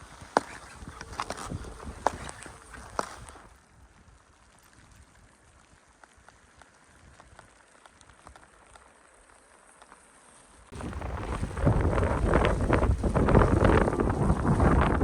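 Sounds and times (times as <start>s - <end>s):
wind buffeting microphone: 0.0s - 3.5s, 10.7s - 15.0s.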